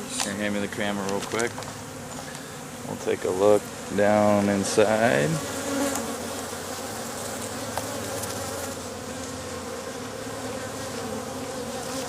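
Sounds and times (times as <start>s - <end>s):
honeybees buzzing: 0.0s - 12.0s.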